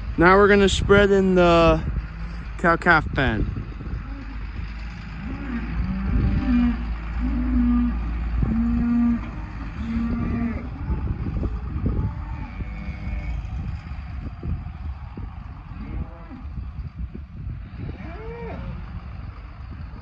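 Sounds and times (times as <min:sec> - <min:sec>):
tractor running: 0:00.0 - 0:20.0
cows mooing: 0:03.6 - 0:16.8, 0:17.5 - 0:18.9.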